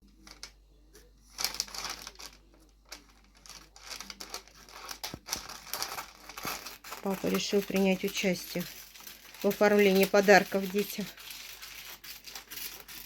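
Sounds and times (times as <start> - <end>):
wrapping paper rustling: 0.1 - 0.6, 1.3 - 13.0.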